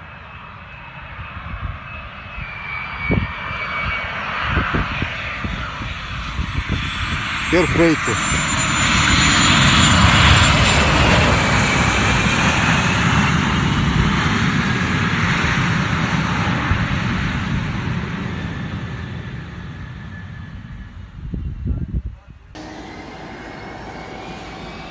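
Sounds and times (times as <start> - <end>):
jet engines passing by: 0.0 - 21.3, 22.6 - 24.9
faint falling engine whine: 22.6 - 24.9.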